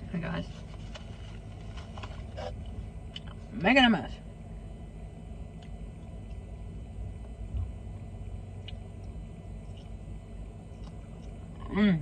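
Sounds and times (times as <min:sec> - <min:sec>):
steady low hum: 0:00.0 - 0:12.0
person eating with mouth clicks: 0:10.8 - 0:11.7.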